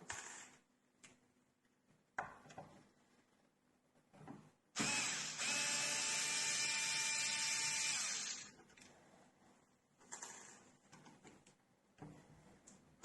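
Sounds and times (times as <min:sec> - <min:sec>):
electric screwdriver motor whine: 0:04.8 - 0:08.5.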